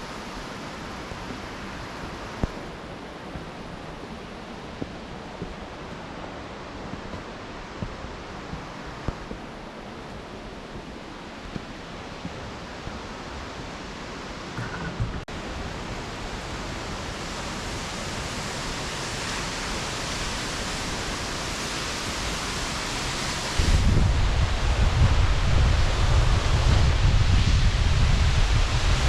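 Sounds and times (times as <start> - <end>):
rushing water or wind: 0.0 - 29.0
wind buffeting microphone: 23.5 - 29.0.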